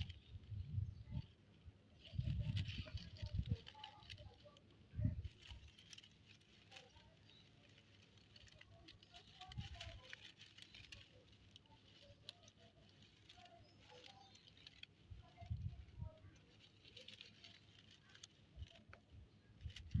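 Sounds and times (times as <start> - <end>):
kittens' paws pattering: 0.0 - 20.0.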